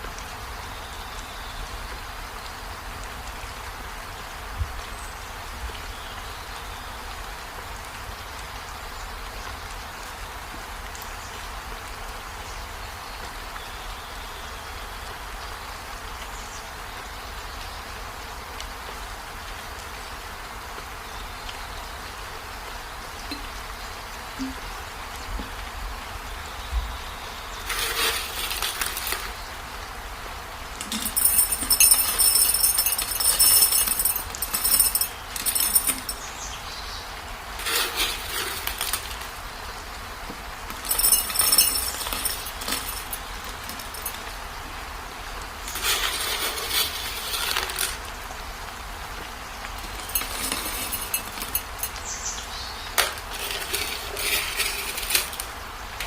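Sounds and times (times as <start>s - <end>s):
material rattling into glass bottle: 27.6s - 29.4s, 30.8s - 36.3s, 37.6s - 39.4s, 40.7s - 44.3s, 45.7s - 48.0s, 49.8s - 52.0s, 53.0s - 55.5s.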